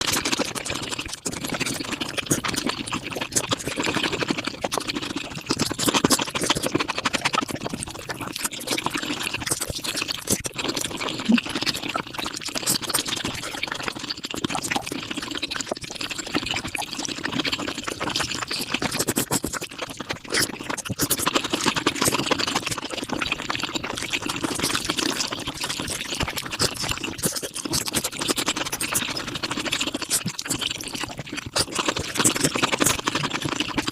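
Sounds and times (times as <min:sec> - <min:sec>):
sped-up chewing and mouth noises: 0:00.0 - 0:33.9.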